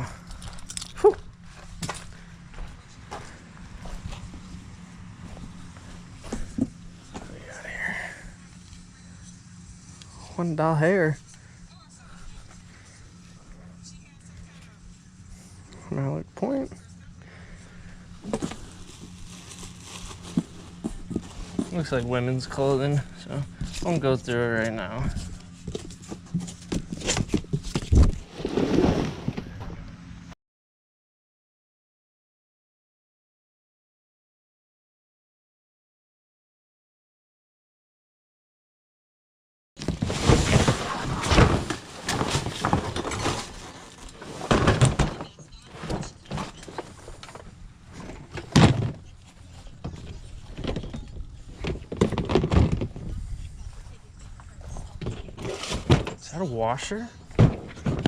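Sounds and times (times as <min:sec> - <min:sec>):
boxes being moved and handled: 0:00.3 - 0:08.2, 0:17.3 - 0:29.7, 0:39.8 - 0:58.0
rustling: 0:18.2 - 0:24.4, 0:39.8 - 0:54.0.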